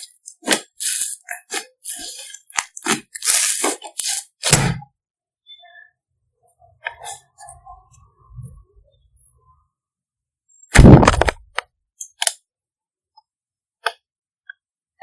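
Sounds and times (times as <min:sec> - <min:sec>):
slime squeezed popping air: 0:00.4 - 0:04.2.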